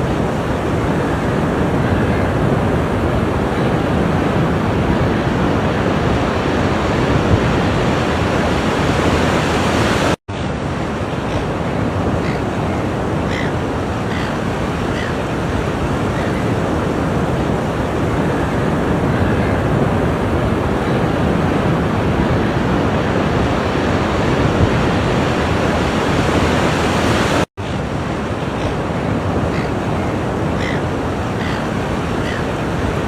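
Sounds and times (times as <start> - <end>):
ocean surf breaking: 0.0 - 33.0.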